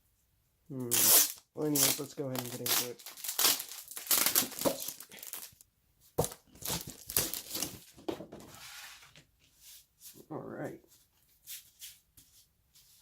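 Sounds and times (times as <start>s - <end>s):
plastic wrapping crinkling and tearing: 0.9s - 5.6s, 6.2s - 7.9s.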